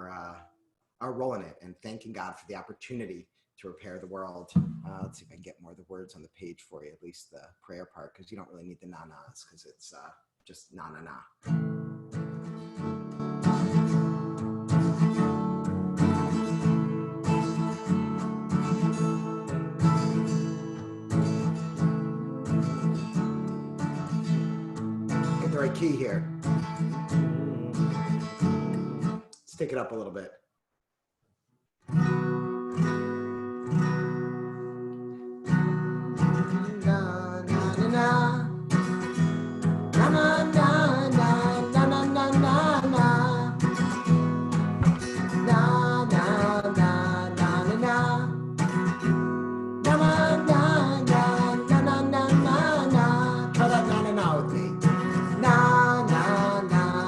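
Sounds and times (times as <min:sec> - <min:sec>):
acoustic guitar strumming chords: 0:04.5 - 0:05.2, 0:11.4 - 0:29.3, 0:31.9 - 0:57.0
person singing: 0:36.4 - 0:38.7, 0:39.9 - 0:44.0, 0:44.8 - 0:48.4, 0:49.8 - 0:57.0.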